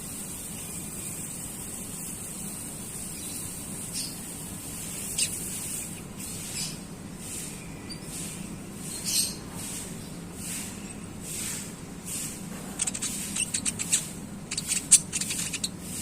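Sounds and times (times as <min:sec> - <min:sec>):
steady high hiss: 0:00.0 - 0:08.9.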